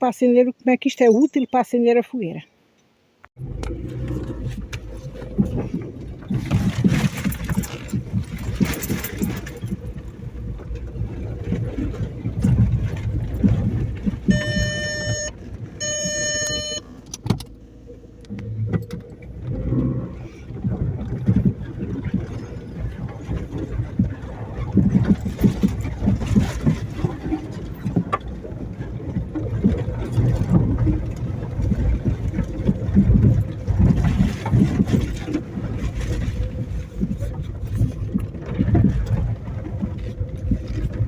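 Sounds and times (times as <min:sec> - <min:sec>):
car engine rumble: 0:03.2 - 0:41.0
electronic beeps: 0:14.3 - 0:16.9.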